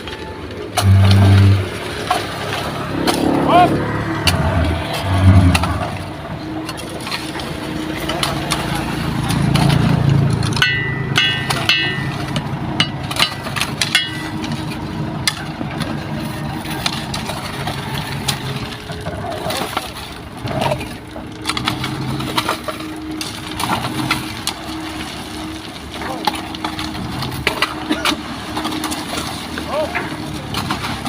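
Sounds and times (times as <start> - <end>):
heavy diesel machinery running: 0.0 - 31.0
knocks and clatter: 4.2 - 18.8.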